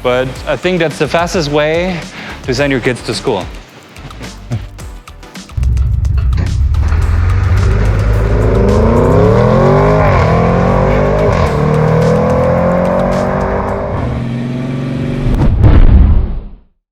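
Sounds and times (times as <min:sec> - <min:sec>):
music: 0:00.0 - 0:14.2
loud hit: 0:05.6 - 0:12.3
car engine accelerating hard: 0:05.6 - 0:15.4.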